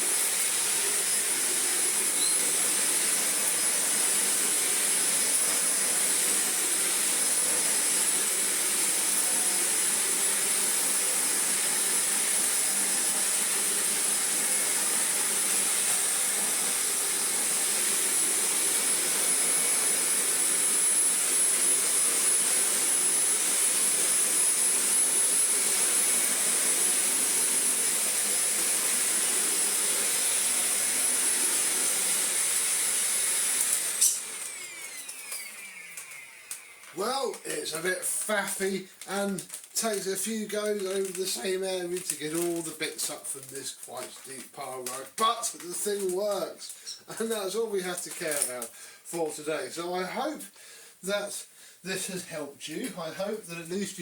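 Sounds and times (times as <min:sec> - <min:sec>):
vacuum cleaner motor whine: 0:00.0 - 0:38.6.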